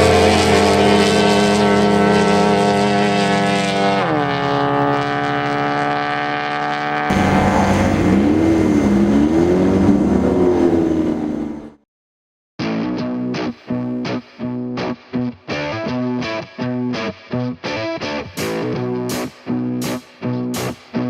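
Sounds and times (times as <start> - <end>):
engine revving up and down: 0.0 - 11.8
race engine at high revs: 0.0 - 11.8
rushing noise: 7.1 - 11.7.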